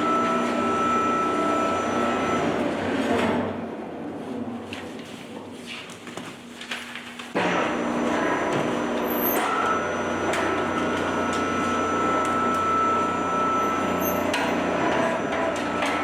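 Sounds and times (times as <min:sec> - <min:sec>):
industrial shredder whining: 0:00.0 - 0:03.1, 0:07.4 - 0:16.0.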